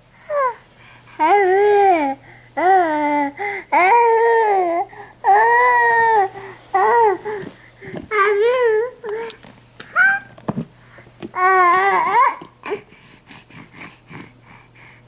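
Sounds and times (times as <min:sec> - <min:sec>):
baby babbling and whining: 0:00.1 - 0:10.4, 0:11.3 - 0:14.4.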